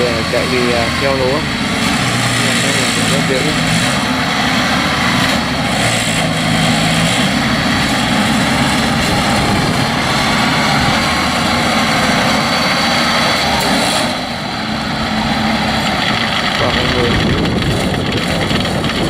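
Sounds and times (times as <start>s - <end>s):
combine harvester droning: 0.0s - 19.0s.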